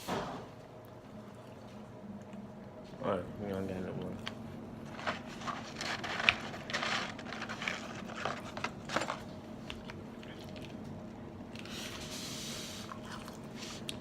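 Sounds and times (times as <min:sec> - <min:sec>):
faint steady hum: 0:00.4 - 0:14.0
eating and food handling: 0:00.6 - 0:14.0.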